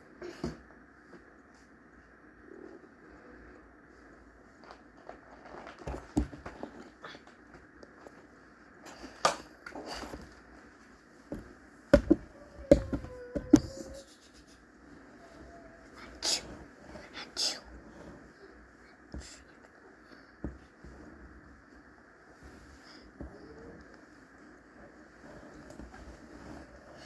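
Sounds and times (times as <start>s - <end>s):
soft handling noise: 0.3s - 27.0s
sharp knocks and taps: 11.3s - 13.8s.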